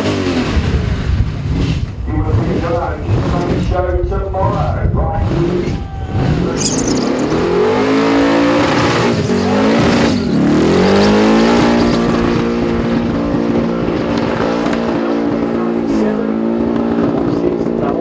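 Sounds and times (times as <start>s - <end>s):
car engine at high revs: 0.0s - 18.0s
tyres spinning and squealing: 5.4s - 12.4s.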